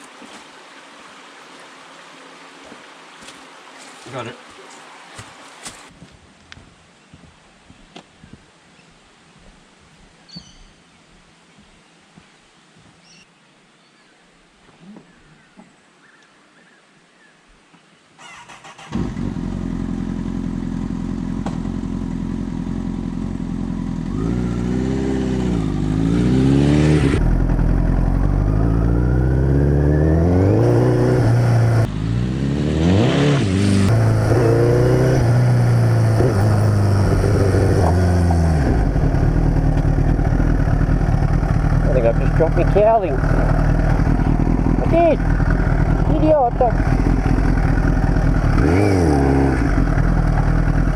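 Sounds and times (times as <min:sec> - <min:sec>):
motorcycle engine revving: 0:18.2 - 0:50.9
motorcycle engine starting: 0:18.2 - 0:50.9.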